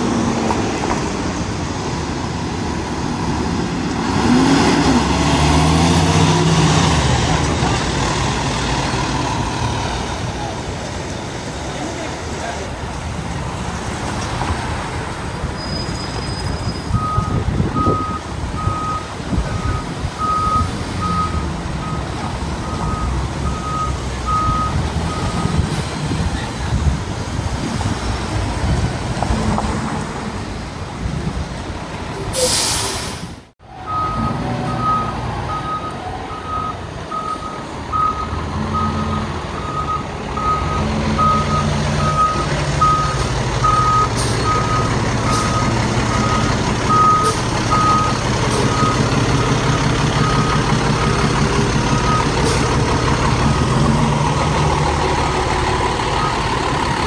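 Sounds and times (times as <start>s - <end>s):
truck engine rumble: 0.0s - 57.0s
reversing alarm beeps: 16.2s - 25.6s, 33.9s - 49.6s
air brakes hissing: 32.2s - 33.5s, 43.0s - 45.7s, 52.3s - 53.0s.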